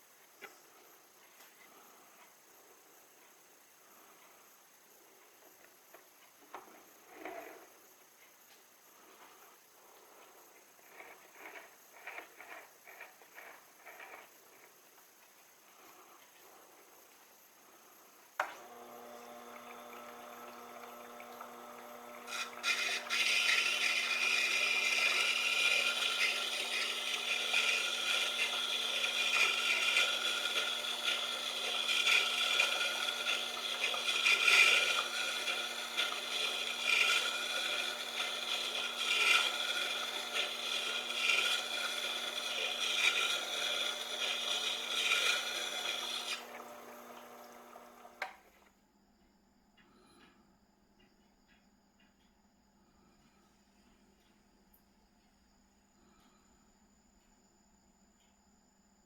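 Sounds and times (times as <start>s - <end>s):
drill bit scraping on grinding stone: 10.8s - 14.7s, 18.5s - 48.3s
grinder motor humming: 18.4s - 48.4s.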